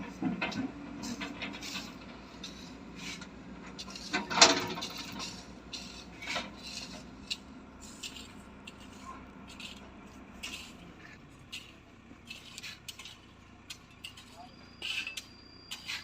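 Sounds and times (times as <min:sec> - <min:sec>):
scraping rubs: 0:01.0 - 0:13.3.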